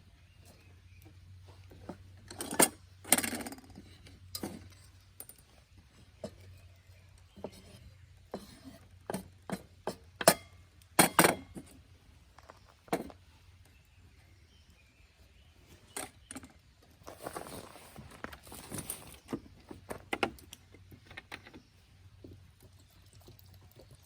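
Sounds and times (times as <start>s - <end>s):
short scraping rustle: 17.0s - 19.9s.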